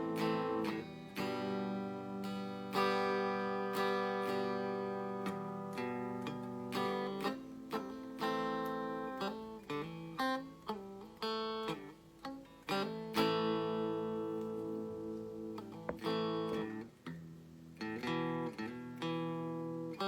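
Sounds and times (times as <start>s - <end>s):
clean electric guitar playing: 0.0s - 20.0s.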